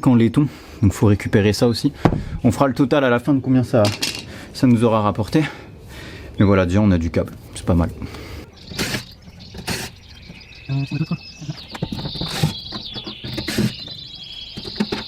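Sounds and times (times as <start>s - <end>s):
small birds singing: 0.0s - 15.0s
sharp clicks and knocks: 11.5s - 14.0s.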